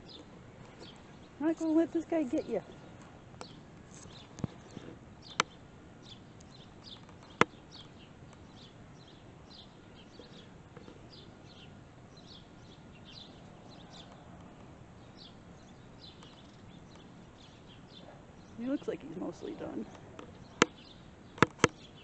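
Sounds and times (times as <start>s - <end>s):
small bird chirping: 0.0s - 22.0s
sharp click: 21.4s - 21.9s.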